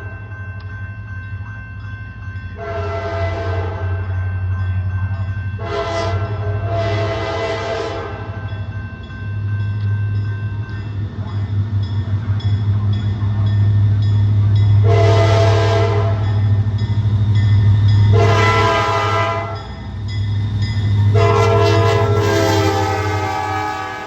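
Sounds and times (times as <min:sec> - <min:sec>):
diesel locomotive engine running: 0:02.5 - 0:24.0
locomotive horn blasts: 0:02.6 - 0:04.0, 0:05.6 - 0:08.3, 0:14.8 - 0:16.4, 0:18.1 - 0:19.7, 0:21.0 - 0:24.0.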